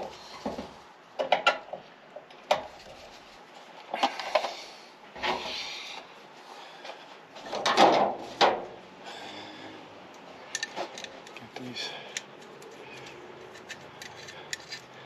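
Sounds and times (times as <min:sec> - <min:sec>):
tools knocking and clicking: 0:10.5 - 0:11.4.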